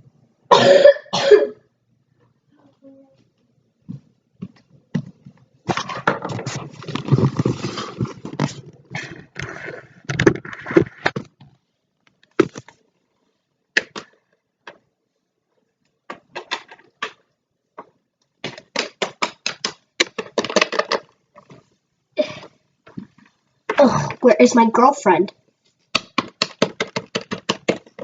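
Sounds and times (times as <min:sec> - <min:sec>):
plastic toys tapping on hard surface: 0:17.8 - 0:21.1, 0:25.9 - 0:28.0.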